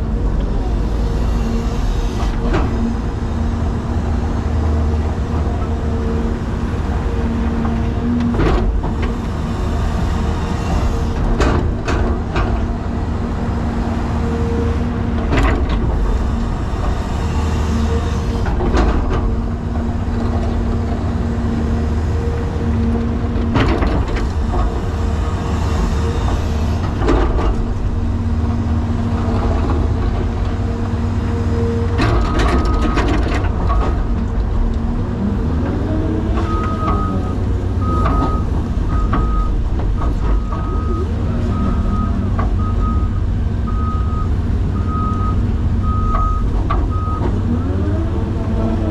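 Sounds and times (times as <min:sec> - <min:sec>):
excavator diesel engine rumbling: 0:00.0 - 0:48.9
excavator digging knocks: 0:08.2 - 0:12.8, 0:15.2 - 0:20.5, 0:23.4 - 0:28.0.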